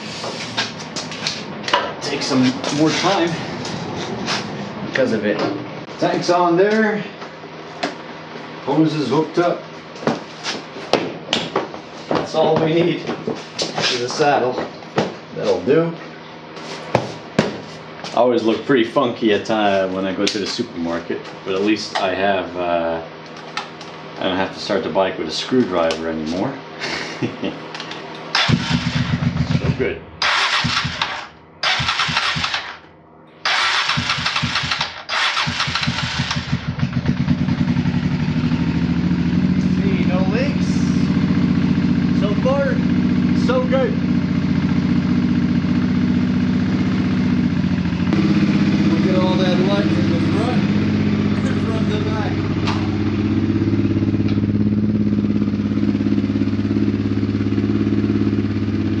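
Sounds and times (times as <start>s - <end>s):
motorcycle engine running: 28.3s - 59.0s.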